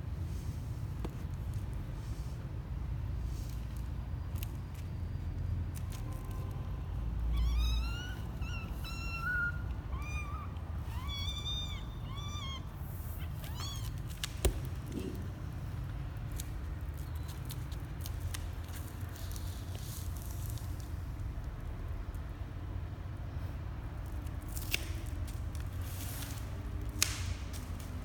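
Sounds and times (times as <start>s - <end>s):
kittens mewing: 7.3s - 15.8s.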